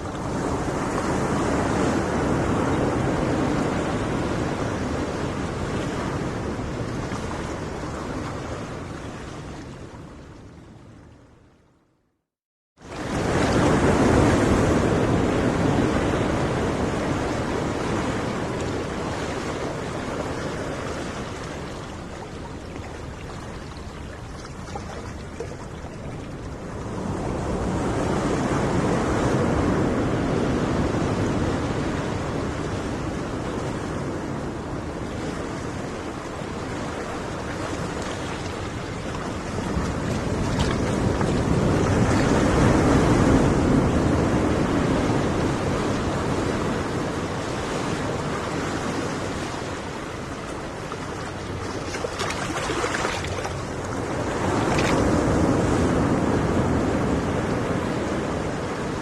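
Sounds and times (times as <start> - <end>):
ocean surf waves: 0.0 - 11.1, 12.8 - 59.0.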